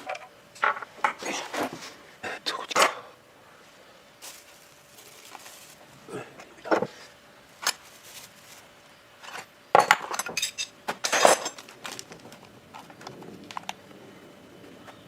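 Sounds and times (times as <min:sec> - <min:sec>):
small parts and tools clattering: 0:07.5 - 0:13.8.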